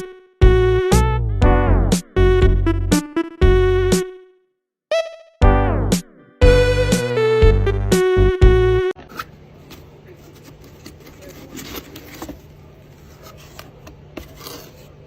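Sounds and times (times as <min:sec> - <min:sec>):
synth music: 0:00.0 - 0:09.0
rubbing and scratching noises: 0:09.1 - 0:15.0.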